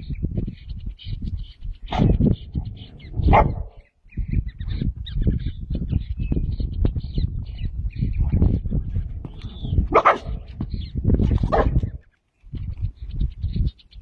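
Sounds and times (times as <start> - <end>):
small birds chirping: 0.0 - 14.0
dog barking: 3.2 - 3.8, 9.9 - 10.5, 11.5 - 11.9.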